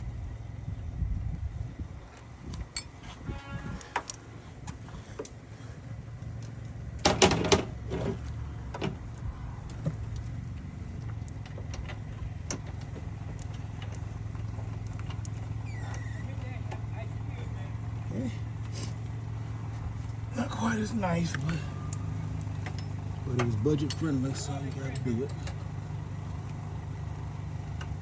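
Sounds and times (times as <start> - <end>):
tool clinking on metal: 2.6 - 3.2, 22.5 - 25.6.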